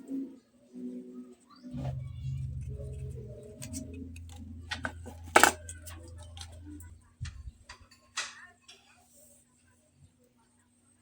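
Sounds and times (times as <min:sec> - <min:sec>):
low steady hum: 0:01.8 - 0:07.9.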